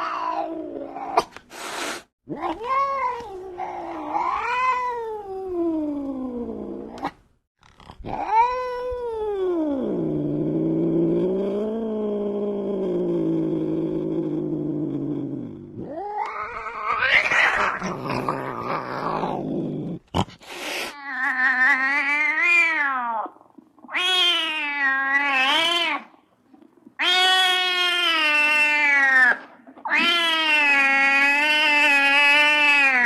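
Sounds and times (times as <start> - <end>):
cat growling and hissing: 0.0 - 33.0
cat yowling: 15.9 - 19.1.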